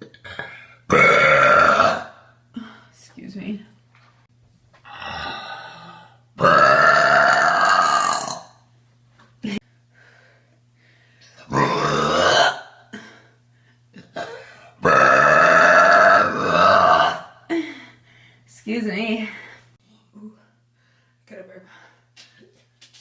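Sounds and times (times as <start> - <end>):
woman burping loudly: 0.0 - 2.7, 6.4 - 8.6, 11.4 - 13.1, 14.0 - 17.5.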